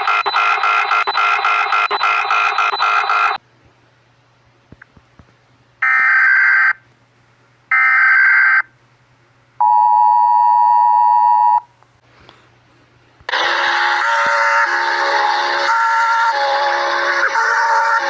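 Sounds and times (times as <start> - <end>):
warbling data bursts: 0.0 - 3.4.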